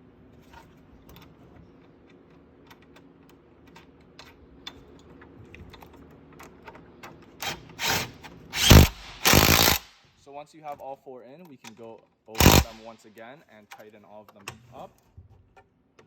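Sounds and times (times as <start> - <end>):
short loud noise bursts: 8.6 - 9.9, 12.4 - 12.9.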